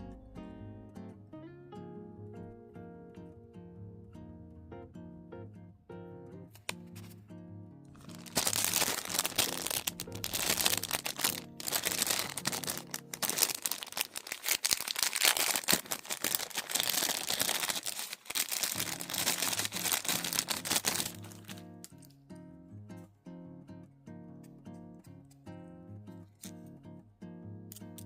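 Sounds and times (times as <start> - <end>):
packaging crinkling and tearing: 8.0 - 22.1.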